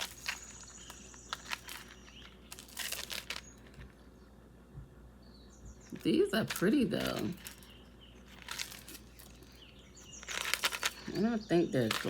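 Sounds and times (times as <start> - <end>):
plastic packaging crinkling: 0.0 - 4.0, 5.9 - 12.0.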